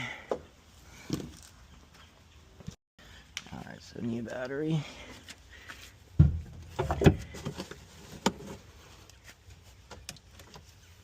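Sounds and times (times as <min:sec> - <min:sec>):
car battery heavy thump: 0:06.2 - 0:07.2.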